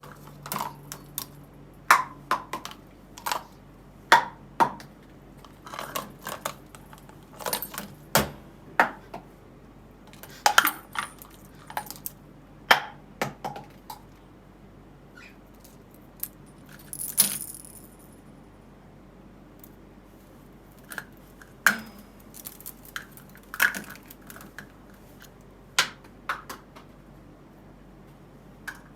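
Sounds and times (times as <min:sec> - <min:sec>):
plastic cups and ball knocking: 0:01.9 - 0:03.5, 0:04.1 - 0:05.0, 0:12.7 - 0:14.1, 0:25.8 - 0:26.9.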